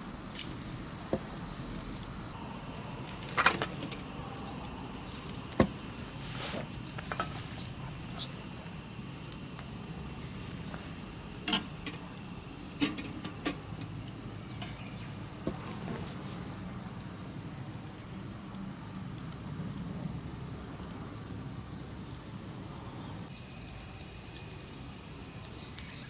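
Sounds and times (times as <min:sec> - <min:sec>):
campfire crackling: 0:00.2 - 0:26.0.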